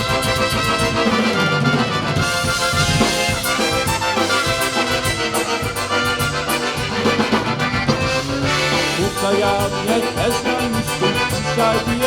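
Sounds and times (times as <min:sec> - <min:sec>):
accordion: 0:00.0 - 0:12.0
polka band playing: 0:00.0 - 0:12.0.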